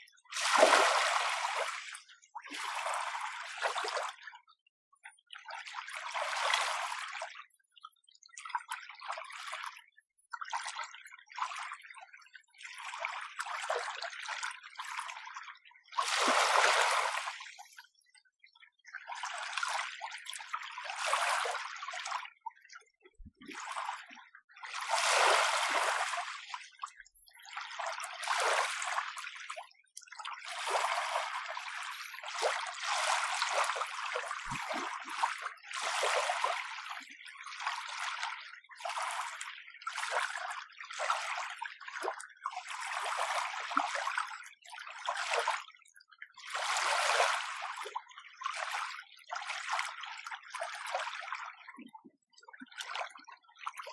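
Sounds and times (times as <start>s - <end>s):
gentle waves lapping at shore: 0.0s - 4.2s, 15.8s - 17.9s, 20.8s - 29.3s, 30.3s - 40.4s, 46.5s - 48.9s.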